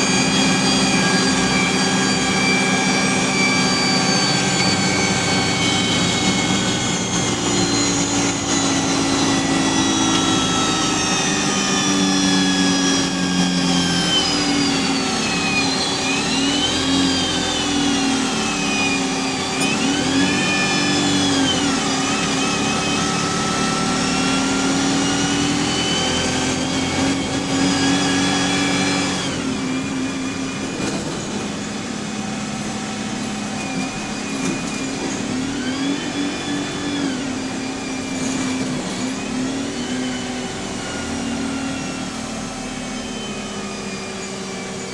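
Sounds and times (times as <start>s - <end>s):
bus engine: 0.0s - 44.9s
bus gearbox whining: 33.3s - 35.4s.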